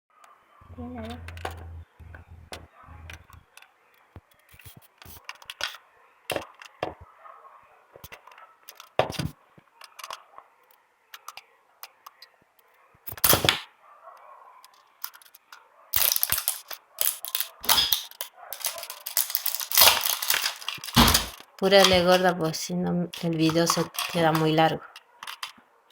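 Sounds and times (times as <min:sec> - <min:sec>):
small objects clicking and tapping: 0:01.2 - 0:07.0, 0:08.0 - 0:10.2, 0:14.7 - 0:22.4, 0:23.1 - 0:25.6.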